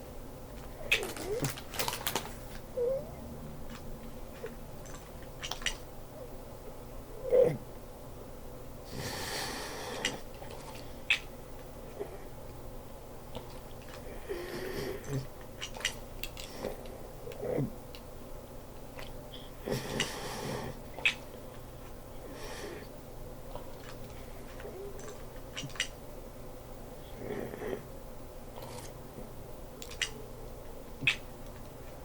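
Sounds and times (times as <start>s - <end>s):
plastic pieces clicking: 0.9s - 2.3s.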